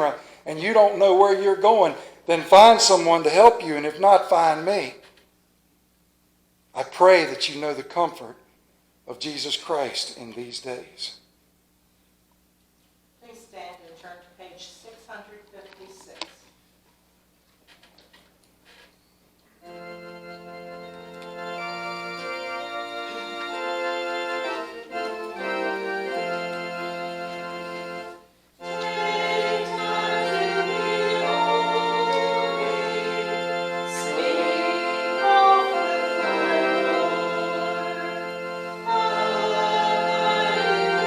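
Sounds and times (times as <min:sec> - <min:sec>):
congregation singing: 0:00.0 - 0:04.8, 0:19.7 - 0:41.0
organ playing hymn chords: 0:00.0 - 0:05.0, 0:06.8 - 0:08.3, 0:09.2 - 0:11.2, 0:19.6 - 0:41.0.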